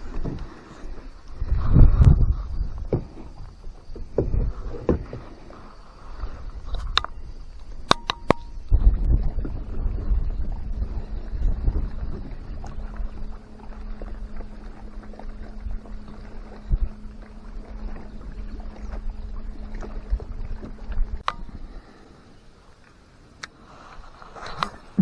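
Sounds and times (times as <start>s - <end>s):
wind rumbling on microphone: 0.0s - 22.5s
steady low hum: 0.0s - 25.0s
water knocking against kayak hull: 2.8s - 5.4s
sharp click: 7.8s - 8.5s.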